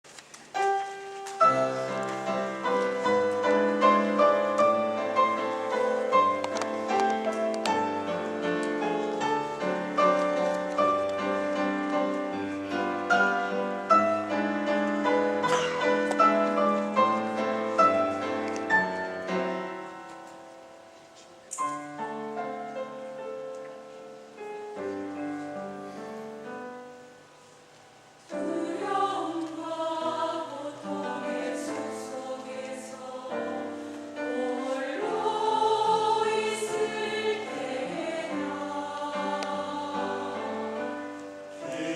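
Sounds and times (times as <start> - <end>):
piano playing: 0.6 - 41.9
choir singing: 1.4 - 19.7, 28.3 - 41.9.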